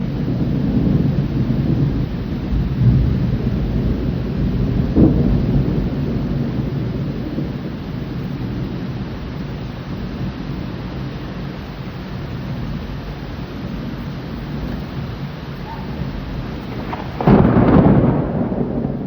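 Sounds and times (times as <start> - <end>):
sharp thunder clap: 0.0 - 10.5, 14.4 - 19.0
steady rain: 0.0 - 19.0
thunder rumbling: 0.0 - 19.0.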